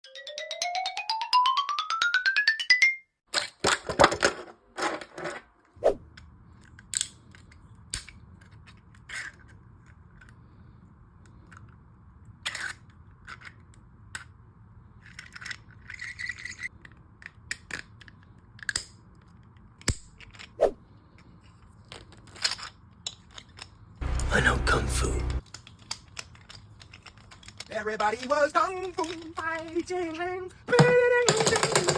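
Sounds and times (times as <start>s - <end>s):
plastic parts clicking and scraping: 3.3s - 31.9s
faint low hum: 24.0s - 25.4s.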